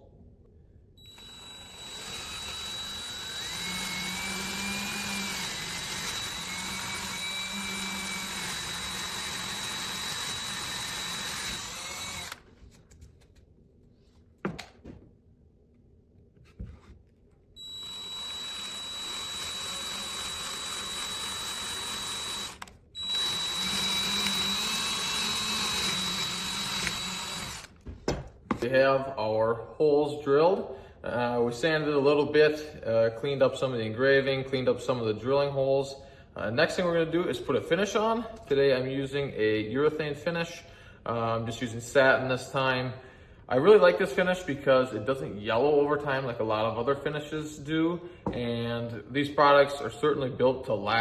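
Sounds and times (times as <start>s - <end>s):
power drill boring wood: 1.0s - 12.5s, 17.6s - 27.8s.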